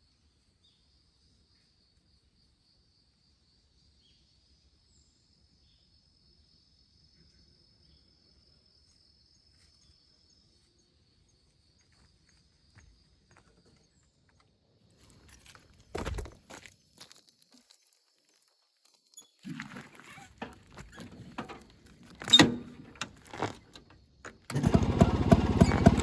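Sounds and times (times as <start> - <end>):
crickets trilling: 0.0 - 24.5.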